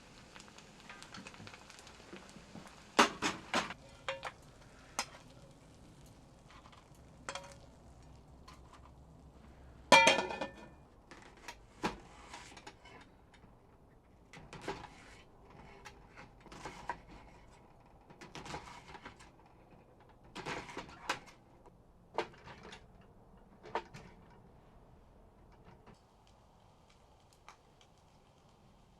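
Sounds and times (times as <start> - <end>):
cookware and utensils clinking: 3.0 - 5.5, 6.5 - 8.9, 9.9 - 10.8.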